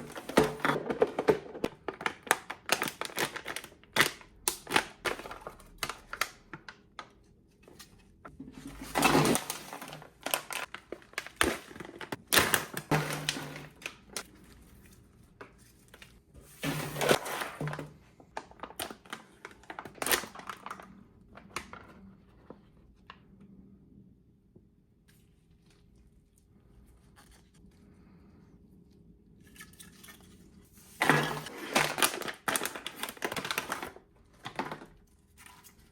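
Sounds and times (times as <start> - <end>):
plastic packaging crinkling: 0.0 - 7.8, 8.6 - 16.2, 17.0 - 22.0, 30.9 - 35.9.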